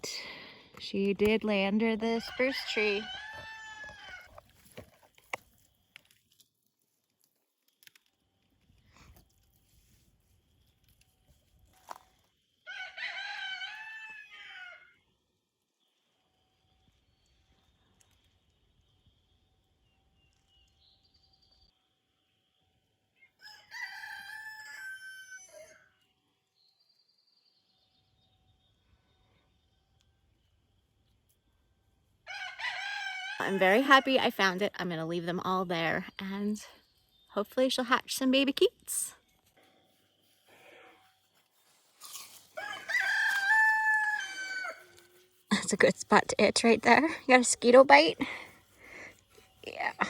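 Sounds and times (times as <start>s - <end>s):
rooster crowing: 2.1s - 4.3s, 12.6s - 15.0s, 23.3s - 26.0s, 32.2s - 34.1s, 42.5s - 45.2s
faint clicks and crackles: 3.9s - 12.4s, 17.0s - 19.5s.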